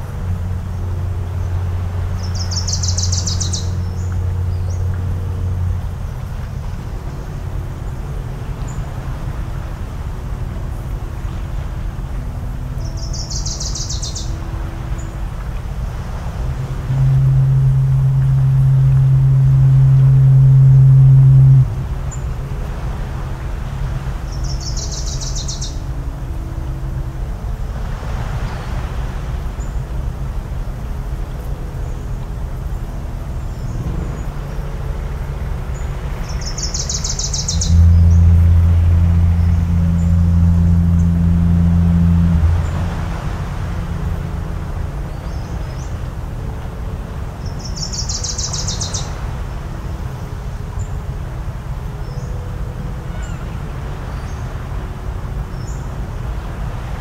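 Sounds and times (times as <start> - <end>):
faint distant hum: 0.0 - 57.0
low rumble of surf: 0.0 - 57.0
deep foghorn blast: 14.4 - 24.3, 25.8 - 47.5.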